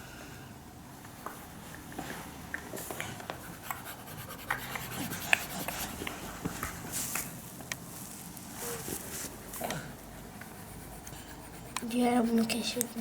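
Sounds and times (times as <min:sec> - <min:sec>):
stylus scratching on drawing tablet: 0:03.4 - 0:06.0, 0:10.1 - 0:13.0.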